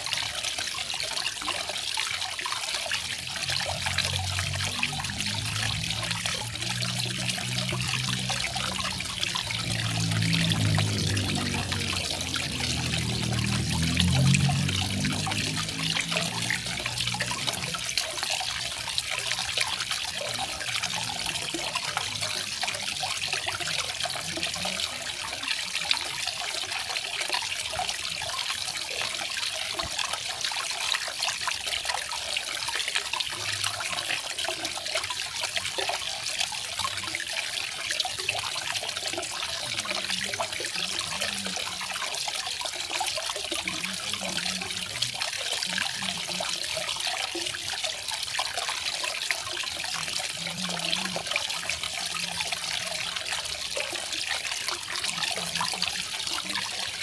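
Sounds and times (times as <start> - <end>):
waterfall splashing: 3.8 - 18.0.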